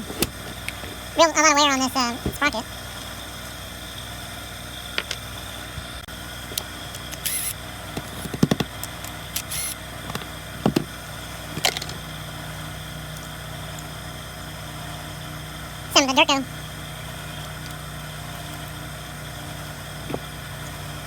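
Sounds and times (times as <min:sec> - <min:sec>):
steady background hum: 0:00.0 - 0:21.0
clicks and knocks of handling: 0:08.0 - 0:10.9.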